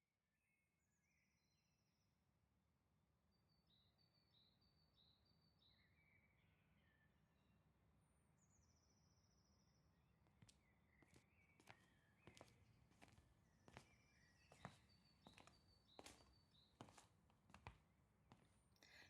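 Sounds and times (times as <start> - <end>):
birds chirping: 10.5 - 17.1.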